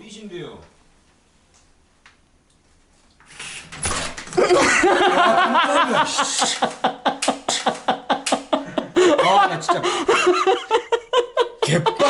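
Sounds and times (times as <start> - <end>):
people laughing loudly: 4.4 - 12.0.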